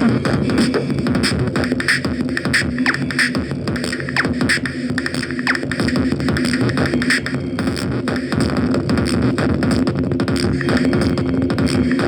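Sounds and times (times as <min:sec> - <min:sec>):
electronic music with fast beat: 0:00.0 - 0:12.0.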